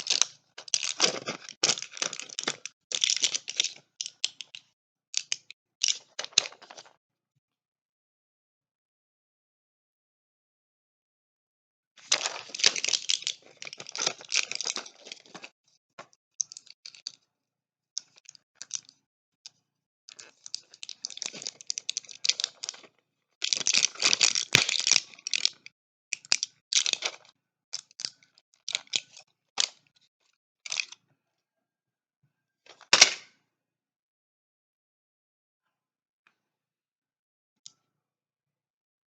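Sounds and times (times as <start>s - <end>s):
cardboard and plastic crinkling: 0.0s - 3.6s, 12.1s - 15.5s, 20.2s - 25.0s.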